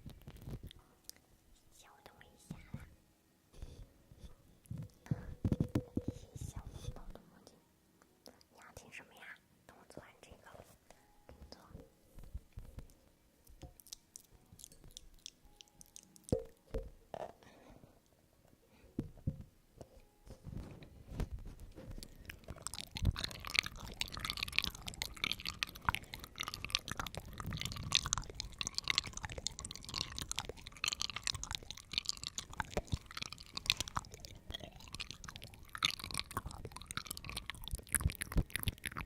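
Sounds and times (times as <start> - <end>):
crunchy chewing of food: 13.5 - 16.4, 20.6 - 39.0.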